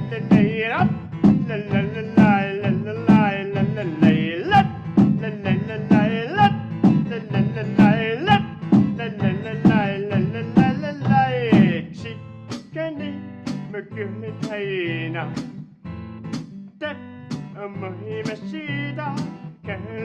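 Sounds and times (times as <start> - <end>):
man singing wordless melody: 0.0 - 15.5, 16.8 - 20.0
box drum beats: 0.2 - 12.7, 13.5 - 13.7, 14.4 - 14.6, 15.3 - 15.7, 16.3 - 16.6, 17.3 - 17.6, 19.1 - 19.5.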